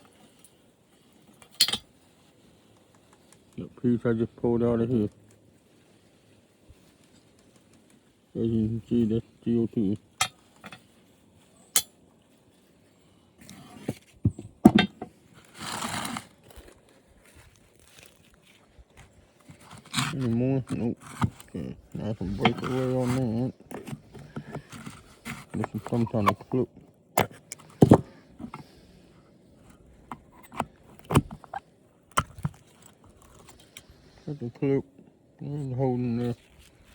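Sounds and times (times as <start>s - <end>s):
plastic parts clicking and knocking: 14.2s - 15.1s, 19.5s - 21.6s, 22.4s - 26.6s, 27.2s - 28.7s, 30.1s - 33.8s
parts knocking and clattering: 14.2s - 15.2s, 27.2s - 28.7s
scraping rustle: 15.1s - 29.0s.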